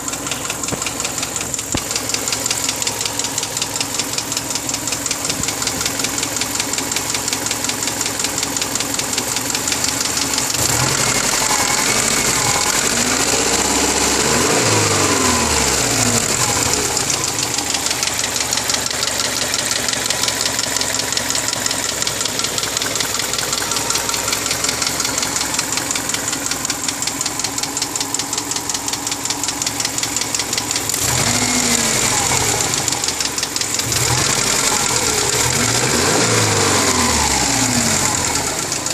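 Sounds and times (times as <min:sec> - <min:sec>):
car engine knocking: 0:00.0 - 0:38.9.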